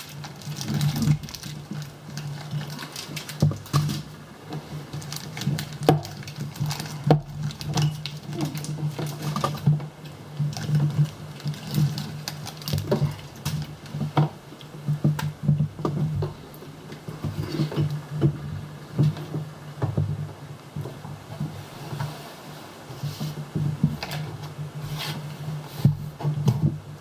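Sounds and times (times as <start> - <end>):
plastic packaging crinkling: 0.0 - 4.2, 4.8 - 15.7.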